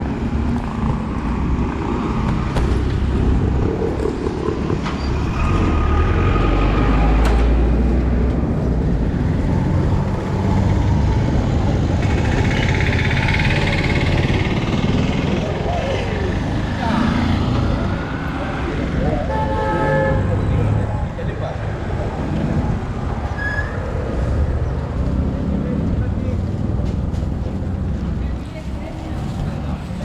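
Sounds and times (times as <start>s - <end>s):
passing traffic engines: 0.0s - 30.0s.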